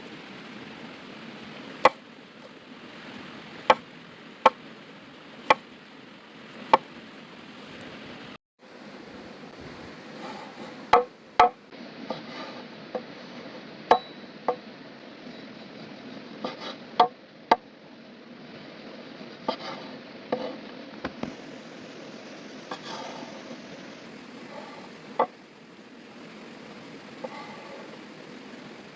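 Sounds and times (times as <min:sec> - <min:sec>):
flowing water: 0:00.0 - 0:28.9
knife chopping on wooden board: 0:11.0 - 0:11.6.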